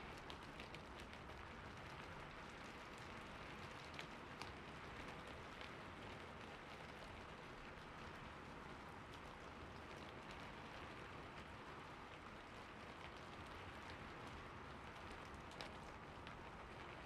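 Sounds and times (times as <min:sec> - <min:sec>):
patter of falling water: 0:00.0 - 0:17.0.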